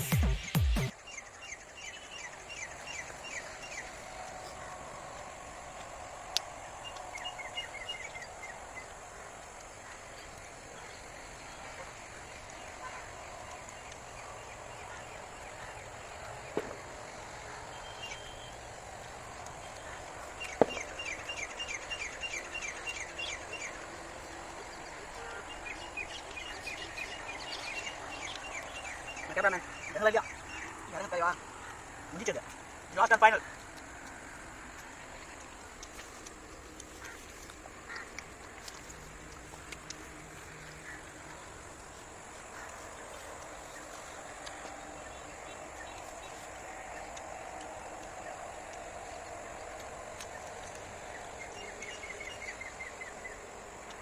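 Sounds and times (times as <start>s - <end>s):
birds chirping rapidly: 0.0s - 4.7s, 17.4s - 33.6s.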